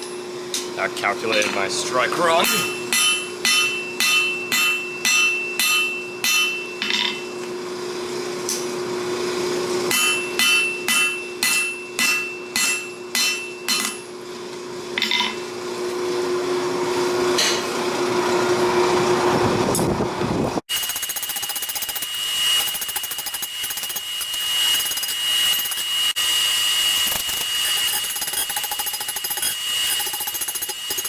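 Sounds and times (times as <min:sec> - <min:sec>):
hammer striking steel on anvil: 0:00.0 - 0:07.4, 0:09.9 - 0:14.1.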